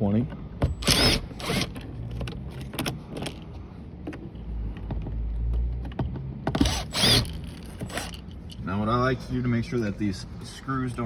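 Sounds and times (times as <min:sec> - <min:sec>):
screwdriver clicking and rattling: 0:06.6 - 0:08.3.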